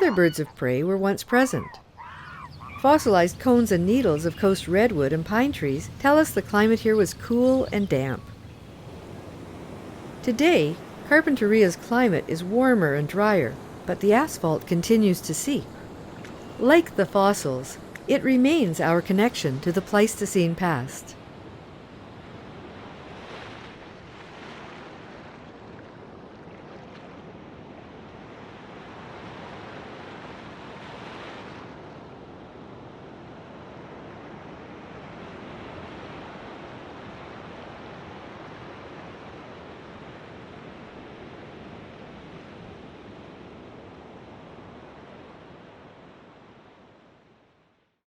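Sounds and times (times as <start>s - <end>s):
ocean surf washing onto beach: 0.0s - 18.7s.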